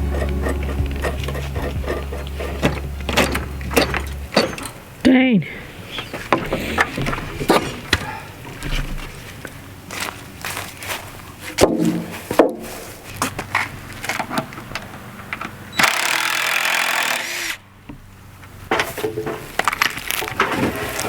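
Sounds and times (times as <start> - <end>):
loud scraping rush: 0.0 - 7.9
wood creaking: 0.0 - 9.4.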